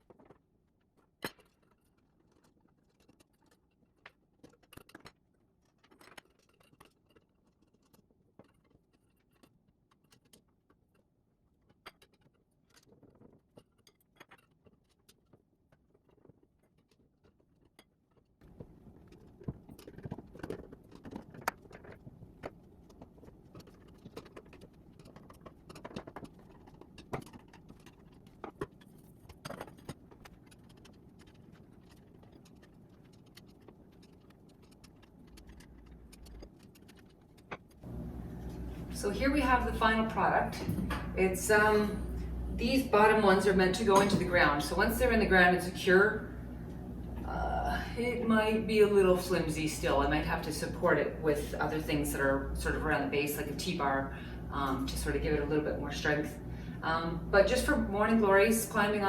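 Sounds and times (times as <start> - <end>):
trellis pieces clicking and rattling: 1.0 - 37.8
steady background hum: 18.4 - 59.0.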